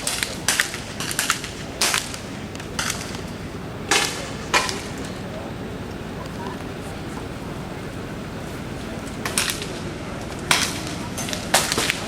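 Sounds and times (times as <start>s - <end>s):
air rifle cracks: 0.0s - 5.2s.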